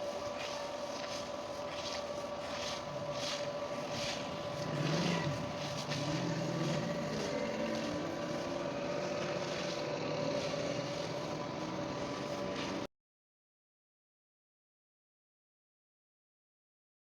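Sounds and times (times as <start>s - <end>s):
motor humming: 0.0s - 12.9s.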